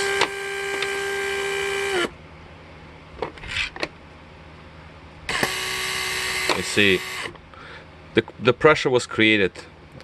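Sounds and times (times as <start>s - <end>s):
electric pump motor whining: 0.0s - 2.2s, 5.3s - 7.4s.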